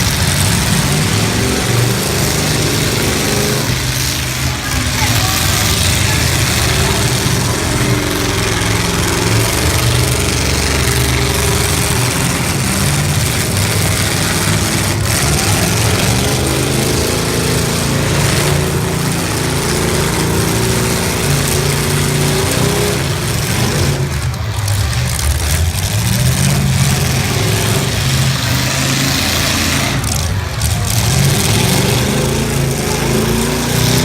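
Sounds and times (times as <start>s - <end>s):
car engines revving: 0.0s - 34.0s.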